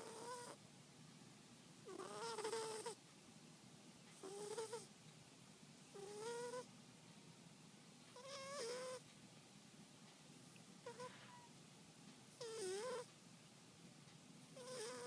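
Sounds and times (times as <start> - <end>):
kitten snoring: 0.0 - 0.6, 1.9 - 3.0, 4.1 - 4.9, 5.9 - 6.7, 8.2 - 9.0, 10.8 - 11.6, 12.4 - 13.1, 14.6 - 15.0.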